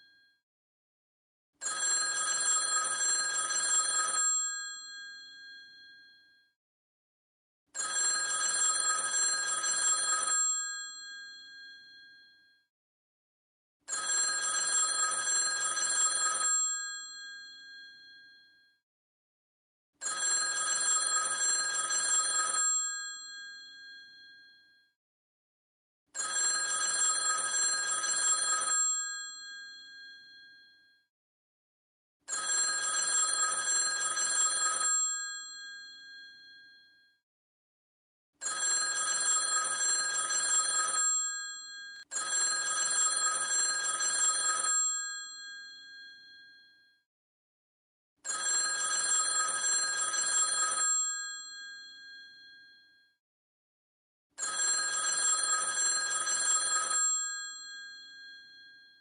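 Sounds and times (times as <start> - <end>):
telephone bell ringing: 1.6 - 6.4, 7.8 - 12.5, 13.9 - 18.7, 20.0 - 24.8, 26.2 - 31.0, 32.3 - 37.1, 38.4 - 47.0, 48.2 - 53.0, 54.4 - 59.0.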